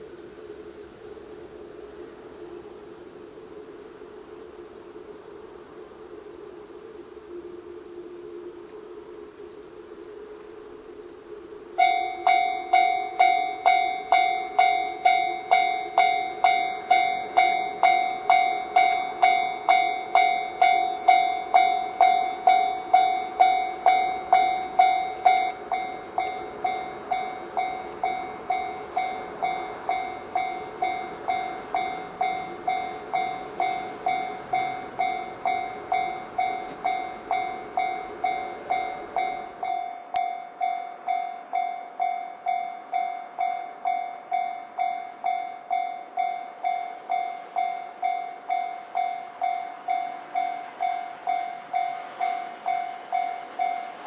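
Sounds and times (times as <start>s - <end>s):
steam train running past: 0.0s - 54.0s
level crossing warning bell ringing: 11.8s - 54.0s
lower-pitched bell ringing: 11.8s - 54.0s.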